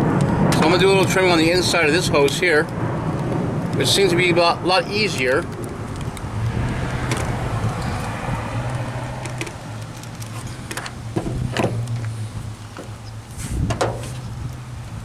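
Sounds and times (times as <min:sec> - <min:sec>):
knife scraping rubber hose: 0:12.8 - 0:14.3.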